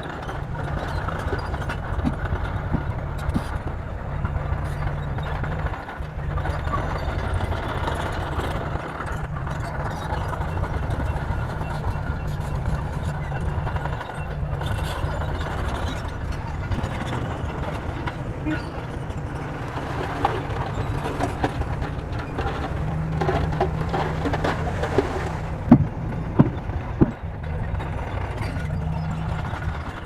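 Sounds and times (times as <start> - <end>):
bulldozer diesel engine running: 0.0 - 30.0.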